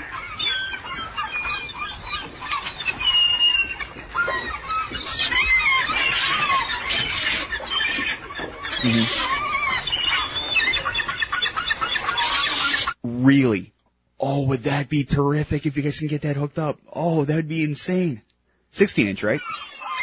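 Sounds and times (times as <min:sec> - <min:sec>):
seagulls squawking: 0:00.0 - 0:13.0, 0:19.0 - 0:20.0.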